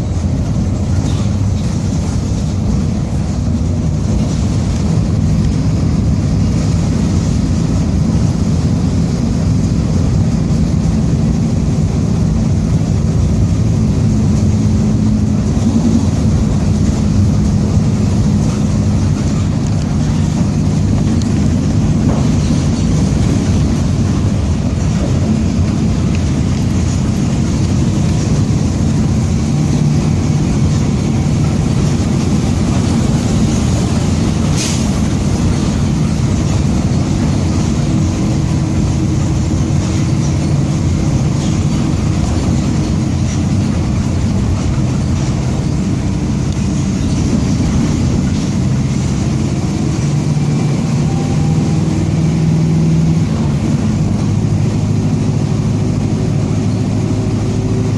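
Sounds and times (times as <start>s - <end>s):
bus diesel engine running: 0.0s - 57.9s.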